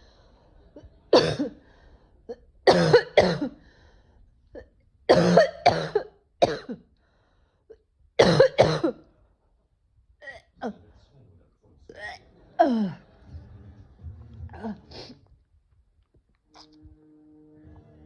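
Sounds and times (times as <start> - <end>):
woman coughing: 1.2 - 1.6, 2.7 - 3.6, 4.6 - 6.8, 8.2 - 9.0.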